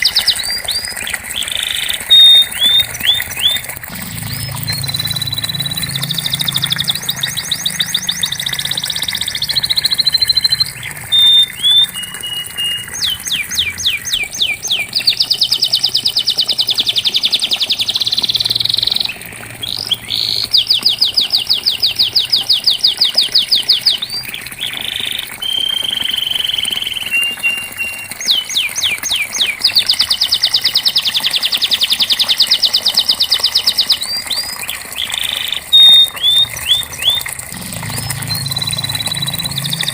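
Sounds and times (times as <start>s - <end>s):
canary singing trills: 0.0s - 31.3s, 32.4s - 39.9s
canary held whistles: 2.0s - 3.7s, 4.4s - 14.6s, 35.7s - 37.3s.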